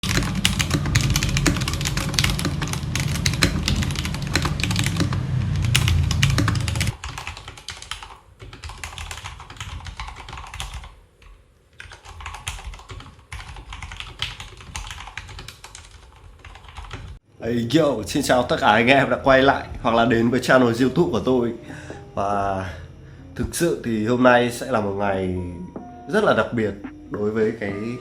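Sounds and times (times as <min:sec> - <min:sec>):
mechanical keyboard typing: 0:00.0 - 0:17.2.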